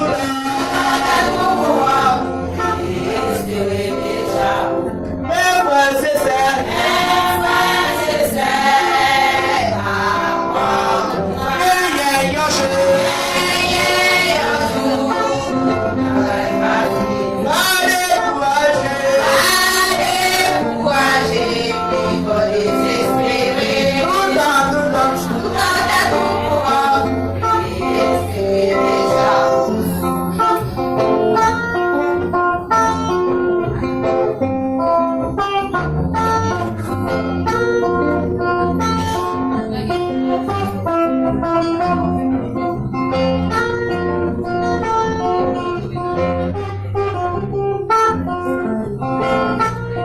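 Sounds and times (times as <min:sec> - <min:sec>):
people singing worship song: 0:00.0 - 0:30.2
guitar accompaniment: 0:00.0 - 0:50.0.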